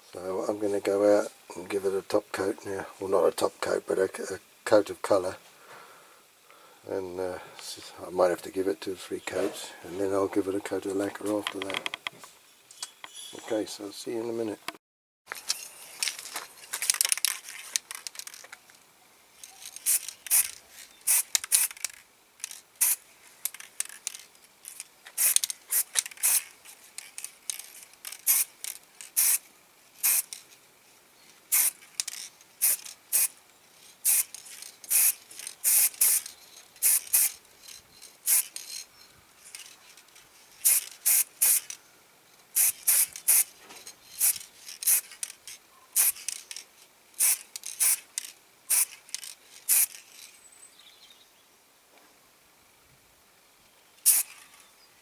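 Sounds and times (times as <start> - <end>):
spray paint hissing: 19.5 - 30.5, 31.5 - 37.4, 38.2 - 39.7, 40.6 - 41.8, 42.5 - 50.3, 54.0 - 54.4.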